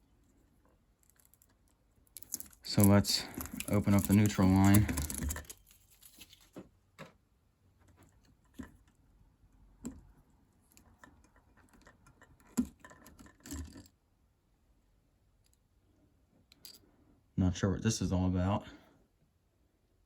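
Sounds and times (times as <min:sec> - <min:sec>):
wiring clicks and scrapes: 0:00.3 - 0:06.7.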